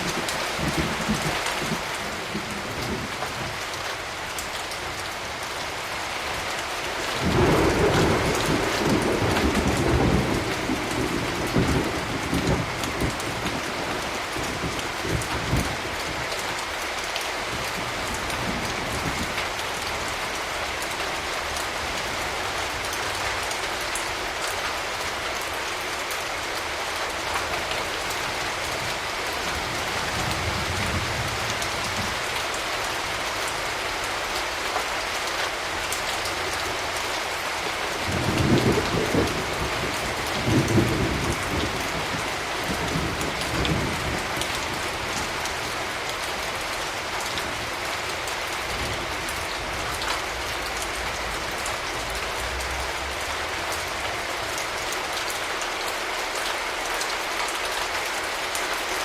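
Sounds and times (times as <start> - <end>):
distant thunder rumbling: 0.0 - 3.6, 7.2 - 16.1, 38.0 - 44.8
steady rain falling: 0.0 - 59.0.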